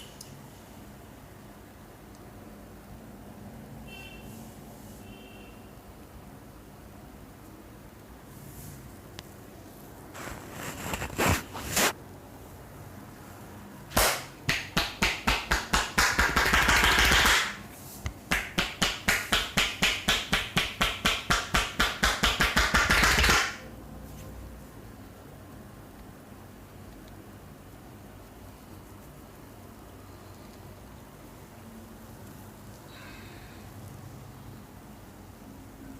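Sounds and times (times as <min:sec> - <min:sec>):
hands slapping in massage: 0:13.9 - 0:23.6
sharp smacks of hands: 0:13.9 - 0:23.6.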